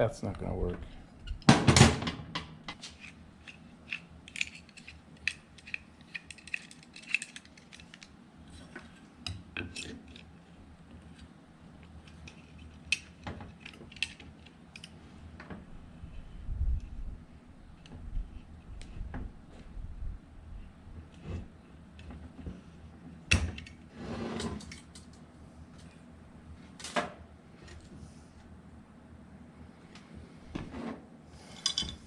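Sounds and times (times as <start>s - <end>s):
metal tools clinking: 31.6s - 32.0s.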